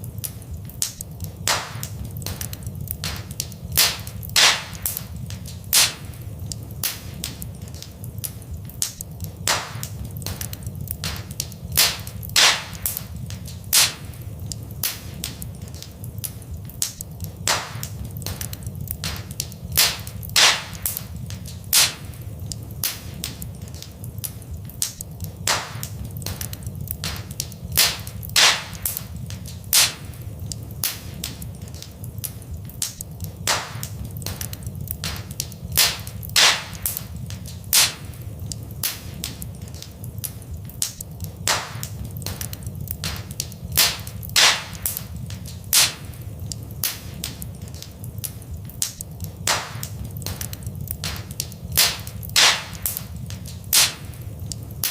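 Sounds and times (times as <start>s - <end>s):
steady low rumble: 0.0s - 54.9s
wood fire crackling and popping: 0.0s - 54.9s.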